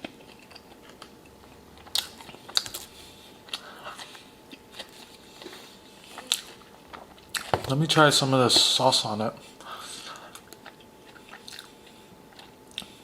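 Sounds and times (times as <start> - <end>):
close chewing: 0.0 - 7.5, 10.1 - 13.0.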